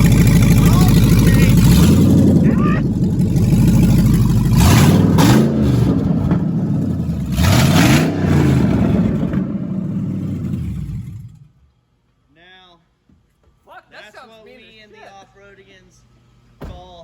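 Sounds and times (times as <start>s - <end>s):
truck engine revving with open exhaust: 0.0s - 11.7s.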